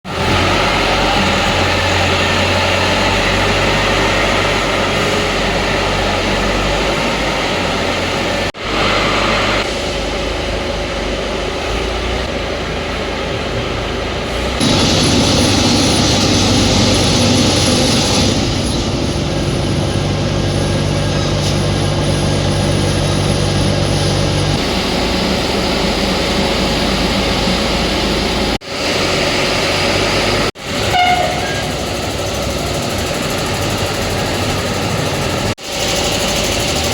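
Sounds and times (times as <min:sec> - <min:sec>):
hydraulic machinery hum and hiss: 0:00.1 - 0:36.9.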